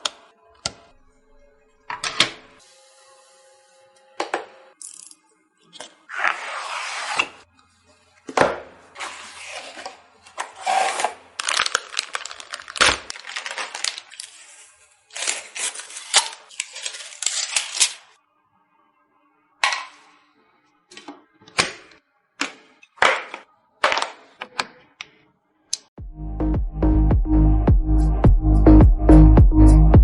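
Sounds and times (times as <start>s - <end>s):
rustling and scraping: 8.9s - 18.1s.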